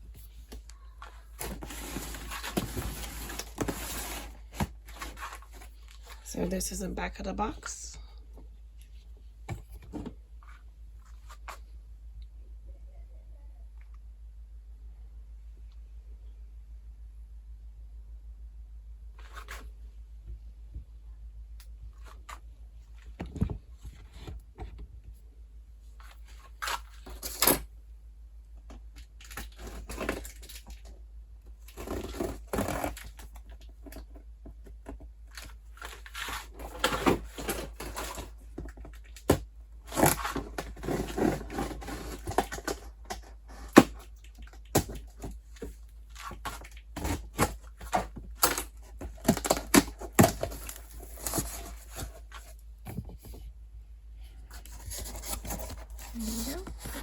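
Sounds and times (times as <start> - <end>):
cardboard box being opened: 1.4 - 5.8, 39.9 - 44.0, 54.5 - 57.0
packaging tearing and rustling: 1.4 - 5.8, 35.3 - 45.3, 46.1 - 52.5.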